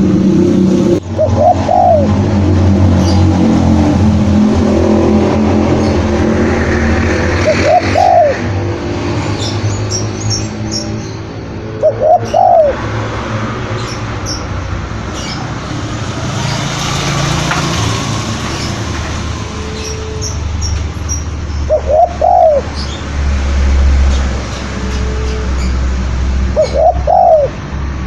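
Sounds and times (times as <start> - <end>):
dove cooing: 1.0 - 2.3, 7.4 - 8.6, 10.7 - 14.4, 21.6 - 22.9, 26.5 - 27.6
small birds chirping: 9.3 - 12.8, 13.7 - 17.3, 19.6 - 23.1.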